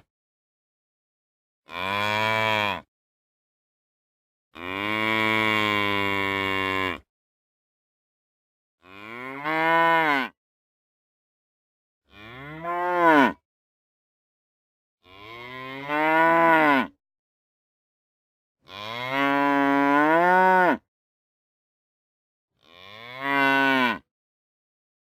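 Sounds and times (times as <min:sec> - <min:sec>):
cattle mooing: 0:12.1 - 0:13.4, 0:15.1 - 0:16.9, 0:22.6 - 0:24.0.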